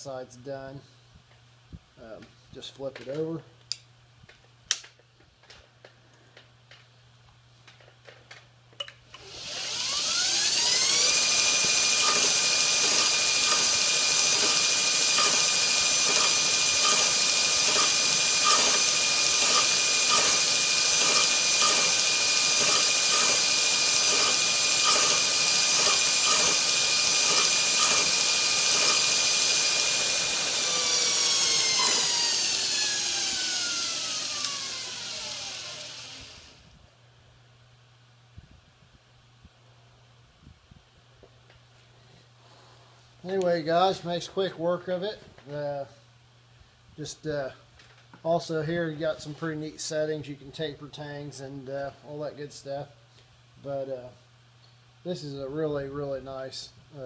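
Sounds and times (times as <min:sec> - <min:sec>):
belt grinder grinding steel: 0:09.2 - 0:36.6.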